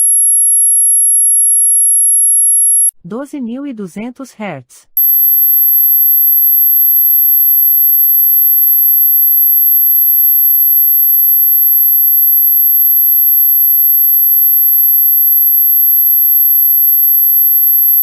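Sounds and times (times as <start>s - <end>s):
high-pitched electronic tone: 5.0s - 18.0s.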